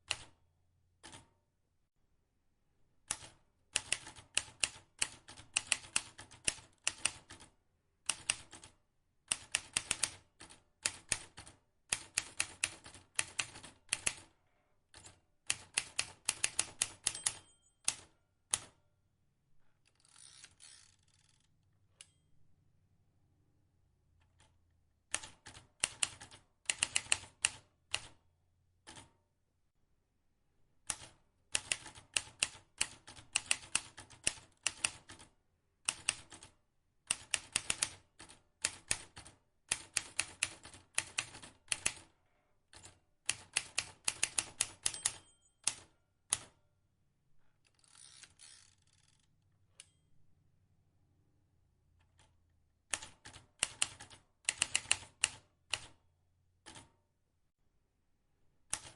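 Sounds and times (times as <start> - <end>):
typewriter keys clacking: 15.0 - 18.7, 43.3 - 46.5.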